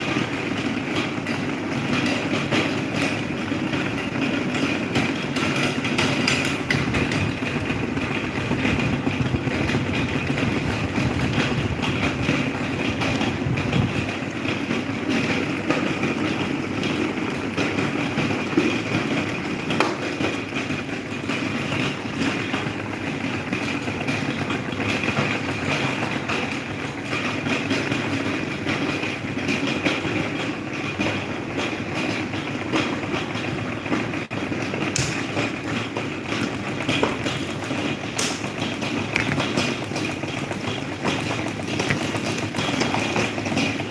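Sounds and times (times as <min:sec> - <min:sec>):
electric fan whirring: 0:00.0 - 0:43.9
fan clicks and rattles: 0:00.0 - 0:43.9.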